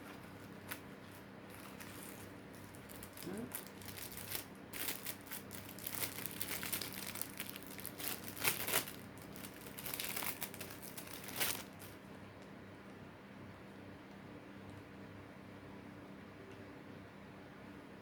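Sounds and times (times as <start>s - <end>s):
packaging crinkling: 0.0s - 12.0s.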